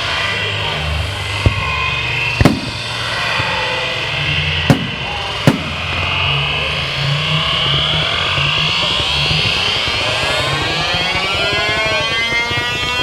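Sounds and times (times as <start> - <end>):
loud background din: 0.0 - 13.0
fireworks bangs: 1.4 - 3.3, 4.7 - 6.4.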